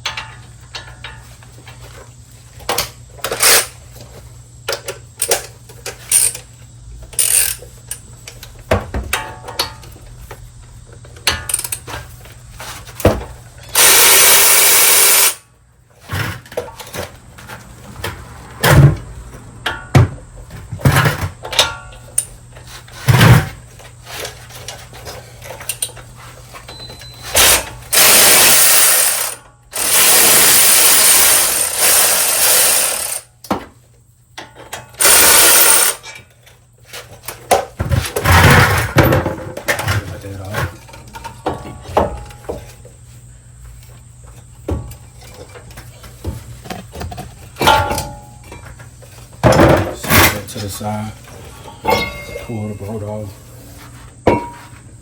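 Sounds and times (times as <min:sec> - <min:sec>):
tools clinking and knocking: 0:00.0 - 0:01.8, 0:07.1 - 0:10.0, 0:20.8 - 0:22.4, 0:51.6 - 0:53.2, 0:54.3 - 0:54.8
power tool bursts: 0:03.3 - 0:03.7, 0:13.7 - 0:15.4, 0:27.2 - 0:33.3, 0:35.0 - 0:36.0.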